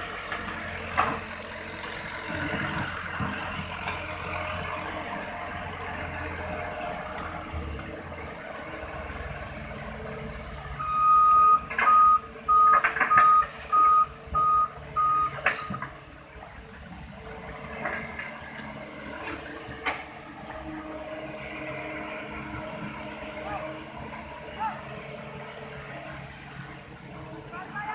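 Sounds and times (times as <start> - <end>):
toy reversing alarm beeps: 10.8 - 15.8.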